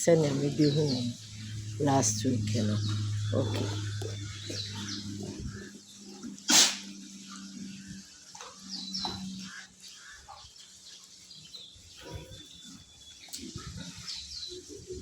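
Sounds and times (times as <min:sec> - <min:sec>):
pigs grunting and snuffling: 0:00.0 - 0:15.0
small birds chirping: 0:00.0 - 0:15.0
pig snort: 0:06.2 - 0:07.0.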